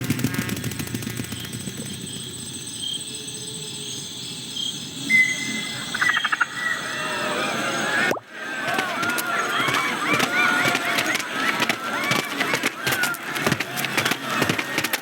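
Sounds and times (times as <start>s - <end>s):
crickets chirping: 1.1s - 8.0s
quick run of clicks: 8.1s - 15.0s.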